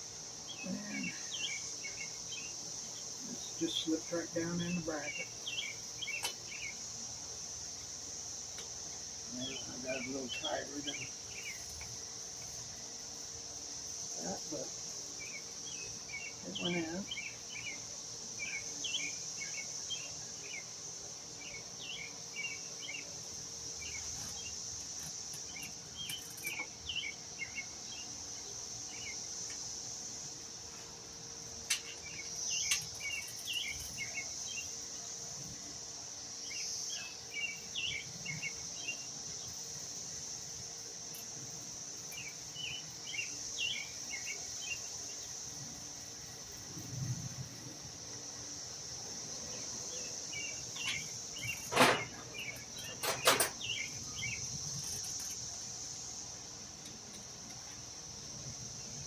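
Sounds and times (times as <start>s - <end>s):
insects droning: 0.0s - 59.0s
songbird chirping: 0.0s - 59.0s.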